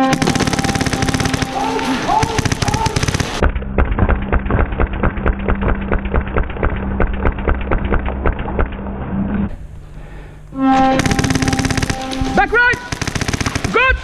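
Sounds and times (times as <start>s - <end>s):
airsoft gun firing full-auto: 0.0s - 3.4s, 11.0s - 14.0s
motor humming: 0.0s - 3.4s, 5.2s - 13.7s.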